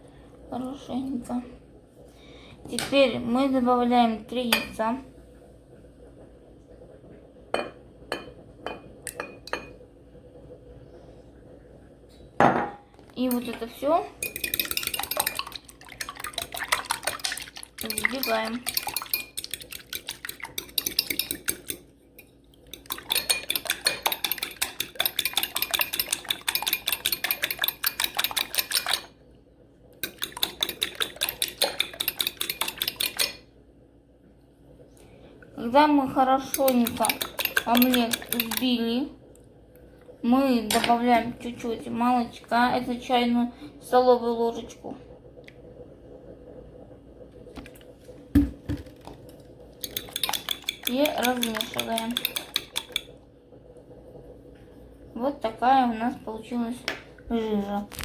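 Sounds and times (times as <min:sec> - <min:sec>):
fork clinking against glass: 0:49.8 - 0:53.0.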